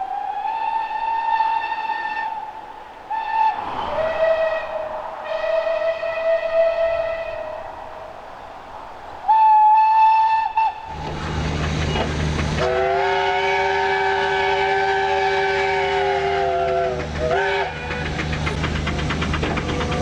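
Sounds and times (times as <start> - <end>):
locomotive hiss and rumble: 0.0 - 20.0
single-note steam whistle: 3.1 - 7.7, 12.6 - 18.1.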